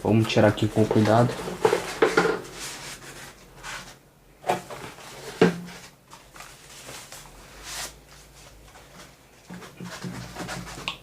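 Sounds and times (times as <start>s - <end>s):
cardboard box rustling and scraping: 0.7s - 8.0s.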